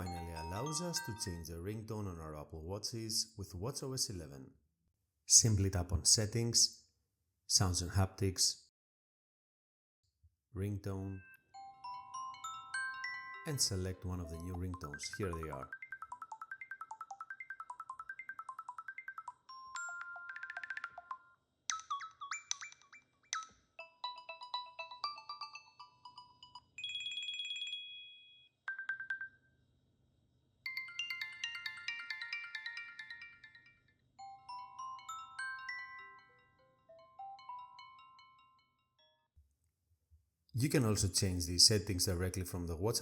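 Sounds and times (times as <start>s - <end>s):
short chiming ringtone melodies: 0.0s - 1.6s, 11.2s - 22.8s, 23.8s - 29.4s, 30.7s - 39.2s.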